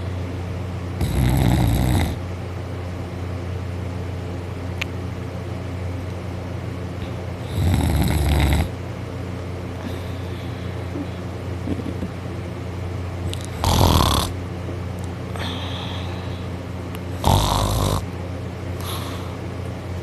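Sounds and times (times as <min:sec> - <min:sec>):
steady low hum: 0:00.0 - 0:20.0
person snoring loudly: 0:01.0 - 0:02.2, 0:07.4 - 0:08.7, 0:13.3 - 0:14.4, 0:17.1 - 0:18.0.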